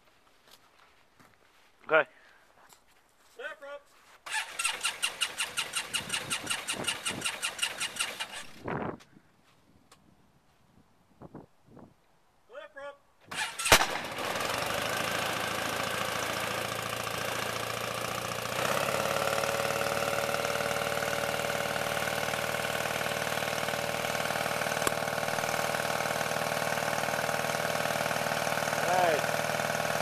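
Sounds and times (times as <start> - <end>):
light aircraft engine idling: 14.1 - 30.0.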